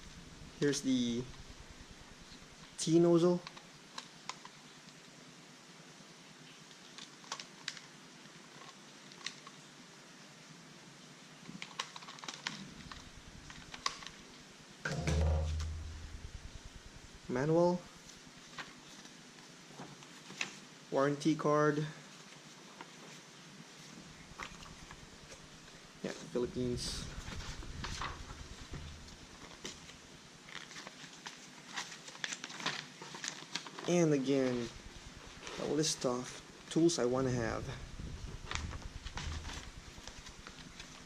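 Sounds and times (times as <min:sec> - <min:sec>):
low humming thump: 0:14.9 - 0:17.3, 0:27.0 - 0:29.2, 0:37.6 - 0:40.4
paper and cardboard rustling: 0:26.1 - 0:41.0.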